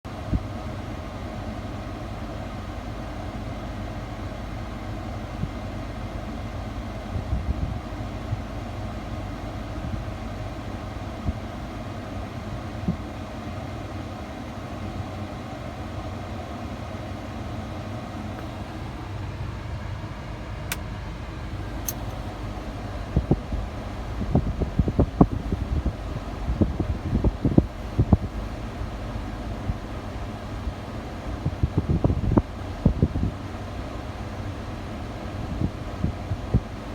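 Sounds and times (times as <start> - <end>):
truck engine idling: 15.1 - 36.9
sharp clicks: 21.8 - 22.3.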